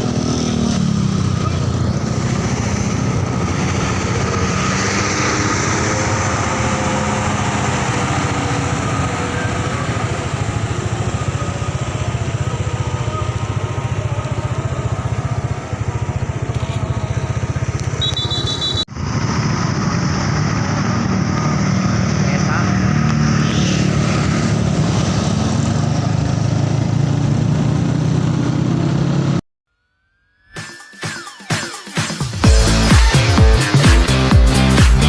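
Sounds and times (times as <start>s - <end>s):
heavy wind: 0.0s - 17.8s
motorcycle engine pulsing: 0.0s - 24.6s
traffic noise: 0.0s - 29.4s
short high beep: 17.9s - 18.9s.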